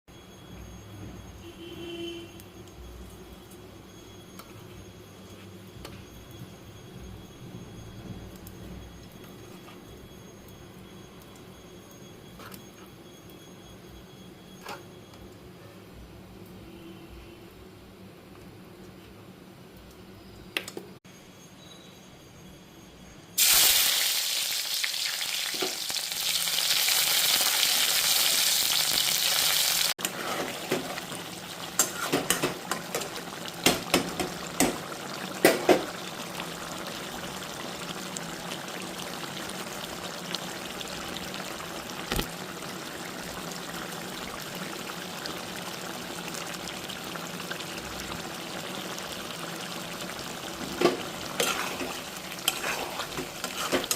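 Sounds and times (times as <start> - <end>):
food sizzling in hot oil: 23.4 - 53.9
spatula scraping a pan: 30.0 - 30.7, 51.4 - 53.9.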